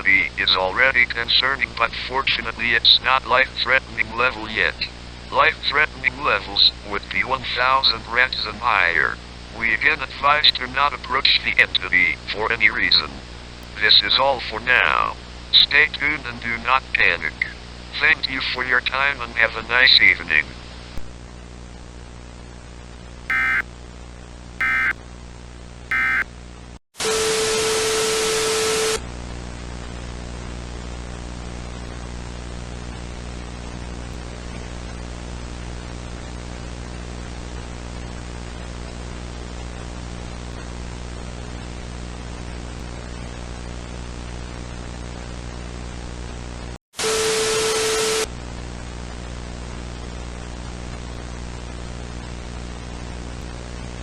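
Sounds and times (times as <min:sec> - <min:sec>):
loud static with low tone: 0:23.3 - 0:23.6, 0:24.6 - 0:24.9, 0:25.9 - 0:26.2
warbling digital data tones: 0:23.3 - 0:23.6, 0:24.6 - 0:24.9.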